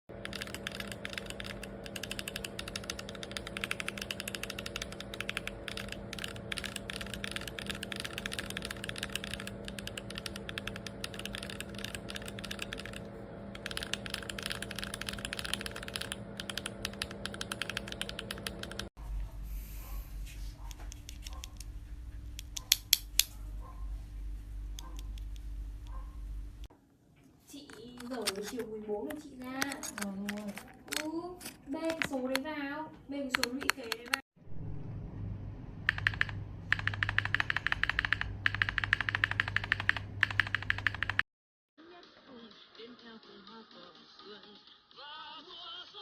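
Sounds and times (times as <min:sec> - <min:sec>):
fast typing on mechanical keyboard: 0:00.1 - 0:18.9, 0:27.7 - 0:32.4, 0:33.3 - 0:34.2, 0:35.9 - 0:41.2
low hum: 0:00.1 - 0:26.7, 0:34.4 - 0:41.2.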